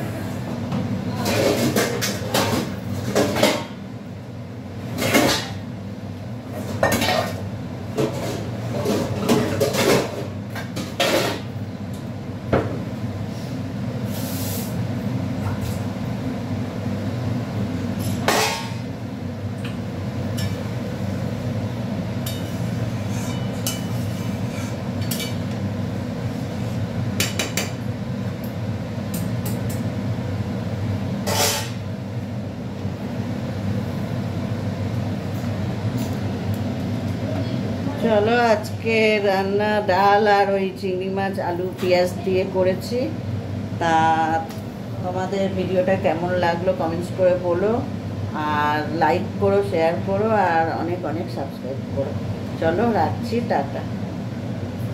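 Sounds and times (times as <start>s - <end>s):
pots and utensils clattering: 1.2s - 3.8s, 4.9s - 5.6s, 6.6s - 7.4s, 8.0s - 11.5s, 18.0s - 18.8s.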